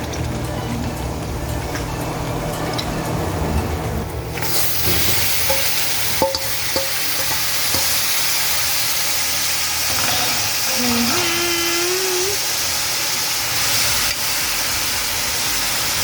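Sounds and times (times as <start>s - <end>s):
chicken sizzling in a pot: 4.3s - 16.0s
metal spoon knocking pot: 4.8s - 8.1s.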